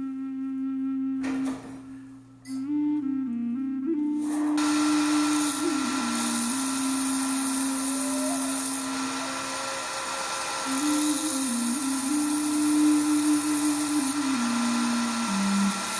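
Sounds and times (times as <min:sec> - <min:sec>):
background music melody: 0:00.0 - 0:08.4
power tool whining: 0:04.0 - 0:15.9.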